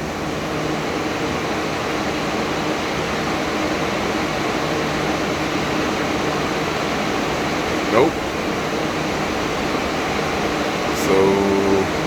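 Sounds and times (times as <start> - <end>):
electric fans humming: 10.8 - 12.0.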